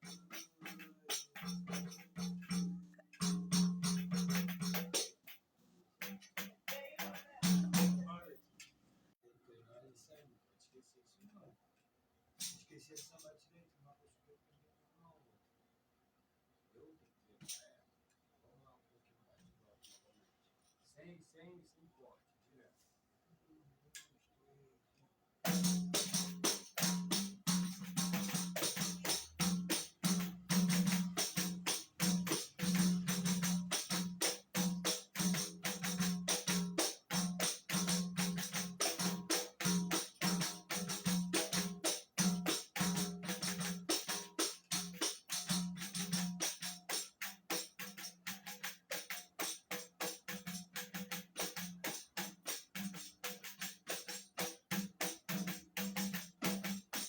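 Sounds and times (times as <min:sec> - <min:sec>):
tamborim struck with stick: 0:00.0 - 0:05.3, 0:06.0 - 0:08.2, 0:25.5 - 0:57.0.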